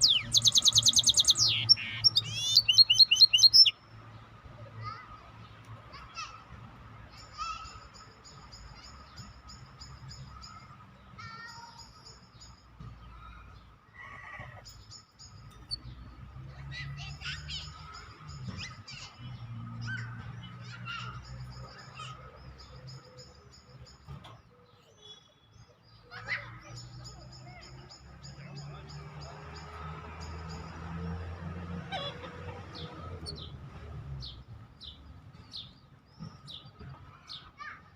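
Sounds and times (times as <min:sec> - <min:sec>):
songbird trilling: 0:00.0 - 0:03.8.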